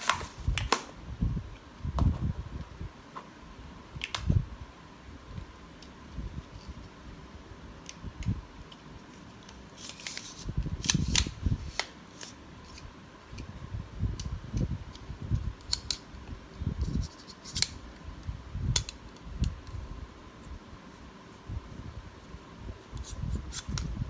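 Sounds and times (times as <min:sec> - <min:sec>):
scissors snipping packaging: 0:00.0 - 0:00.9.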